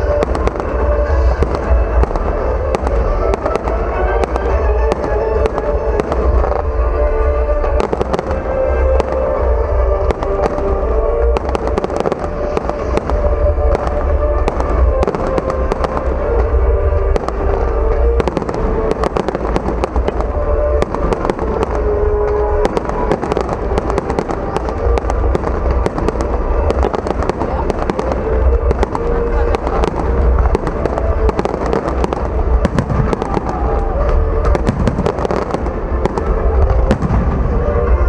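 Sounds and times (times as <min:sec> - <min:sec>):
fireworks bangs and crackles: 0:00.0 - 0:38.0
heavy low booms: 0:00.0 - 0:38.0.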